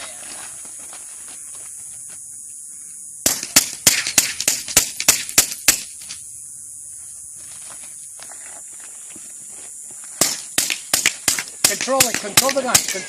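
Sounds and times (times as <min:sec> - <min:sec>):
rapid pistol shots: 0:10.2 - 0:13.0.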